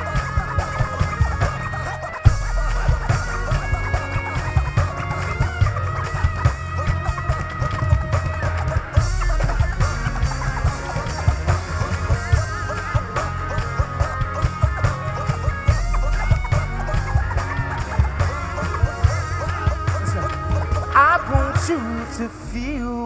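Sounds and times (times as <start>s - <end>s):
steady drum beat: 0.0s - 22.3s
live band playing: 0.0s - 22.4s.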